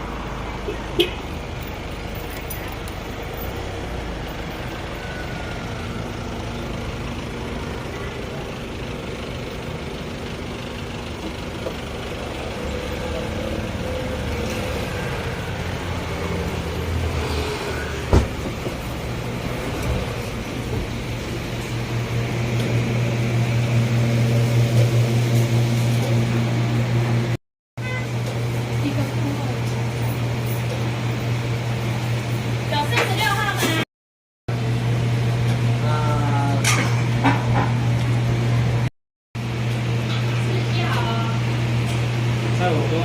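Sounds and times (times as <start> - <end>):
low engine rumble: 0.0 - 33.8
vehicles passing: 0.0 - 33.8, 34.5 - 43.0.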